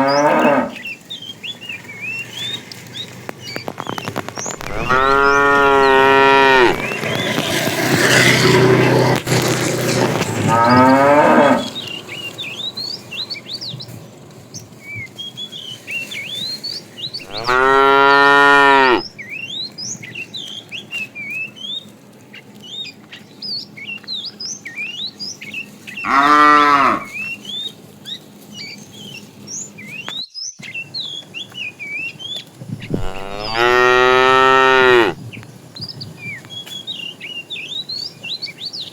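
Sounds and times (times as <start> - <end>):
cattle mooing: 0.0 - 0.8, 4.6 - 7.5, 8.4 - 11.9, 17.2 - 19.1, 26.0 - 27.2, 32.8 - 35.2.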